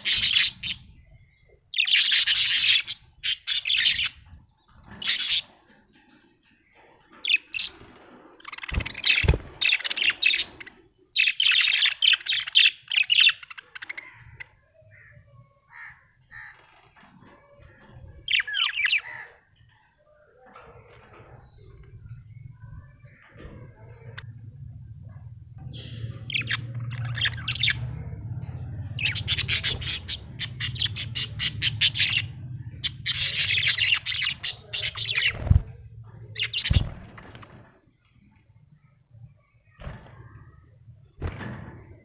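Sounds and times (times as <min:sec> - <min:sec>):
budgerigar chirping and warbling: 0:25.7 - 0:28.0, 0:28.9 - 0:35.4.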